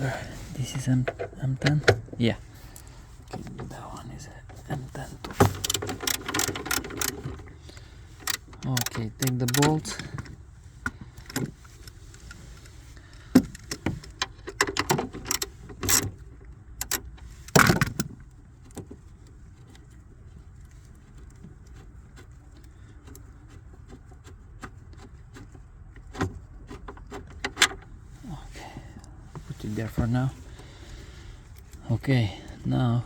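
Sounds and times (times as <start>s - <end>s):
socket wrench clicking on bolt: 5.5s - 7.3s.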